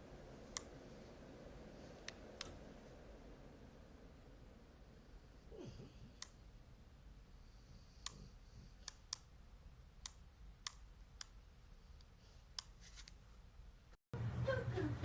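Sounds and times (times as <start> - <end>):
faint sharp clicks: 0.5 - 0.7.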